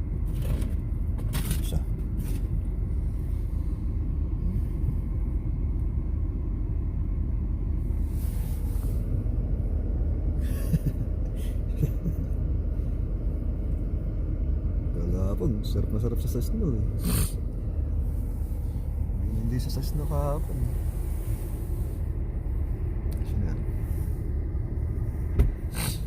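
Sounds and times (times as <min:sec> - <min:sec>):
car engine idling: 0:00.0 - 0:26.0.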